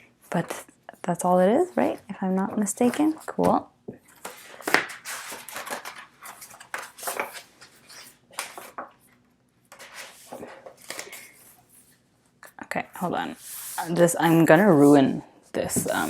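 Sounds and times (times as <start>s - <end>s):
paper and cardboard rustling: 4.1s - 8.9s, 13.4s - 16.0s.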